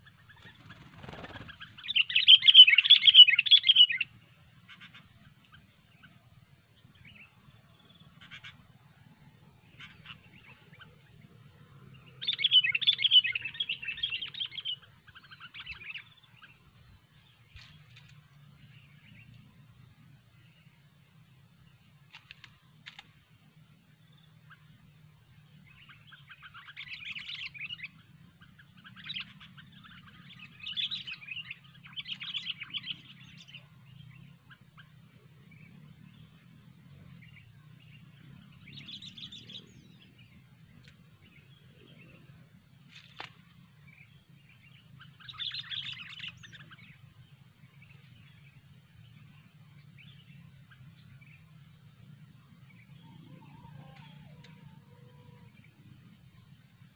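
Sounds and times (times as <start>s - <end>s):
bird chattering calls: 0.1s - 5.4s, 8.1s - 8.7s
low hum: 4.0s - 56.9s.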